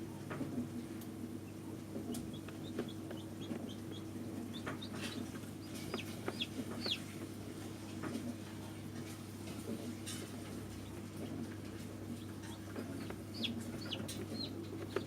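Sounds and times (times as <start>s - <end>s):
steady low hum: 0.7s - 8.5s, 9.4s - 15.0s
chicks peeping: 1.4s - 7.7s, 10.7s - 15.0s.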